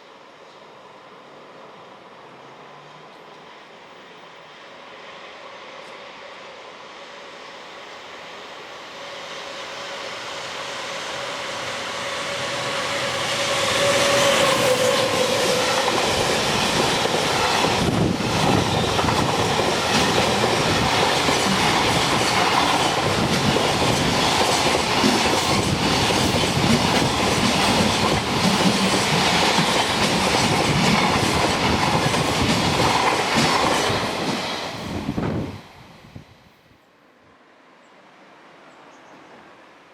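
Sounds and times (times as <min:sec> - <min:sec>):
locomotive whine: 0:07.3 - 0:28.5.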